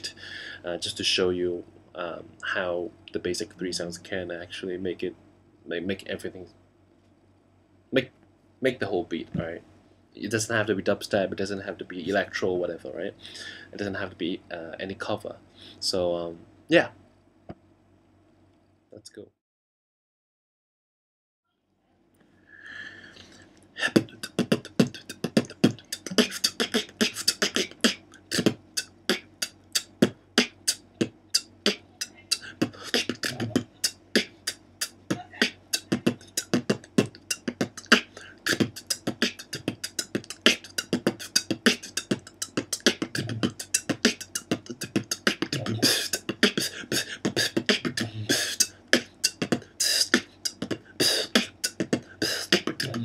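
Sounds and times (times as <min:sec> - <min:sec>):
beatboxing hi-hat: 0:23.2 - 0:53.0
beatboxing bass kick: 0:23.8 - 0:53.0
beatboxing rim shot: 0:23.8 - 0:53.0.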